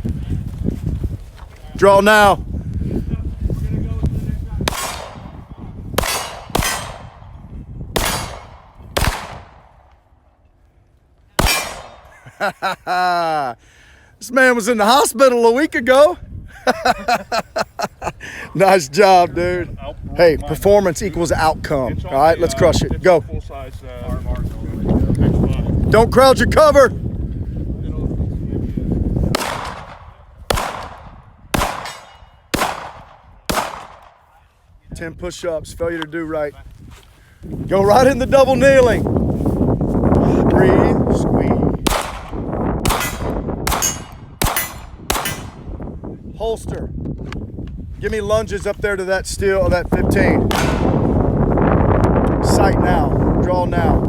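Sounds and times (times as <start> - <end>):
pistol shots echoing: 4.7 - 7.4, 8.0 - 9.9, 11.4 - 12.2, 29.4 - 34.2, 41.9 - 45.7, 50.5 - 51.0.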